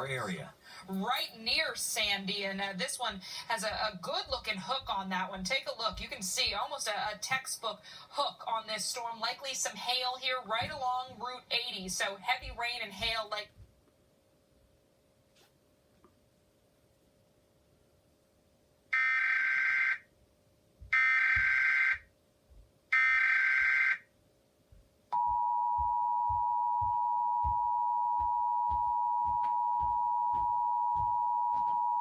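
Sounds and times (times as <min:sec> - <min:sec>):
steady two-tone alert signal: 0:25.2 - 0:32.0.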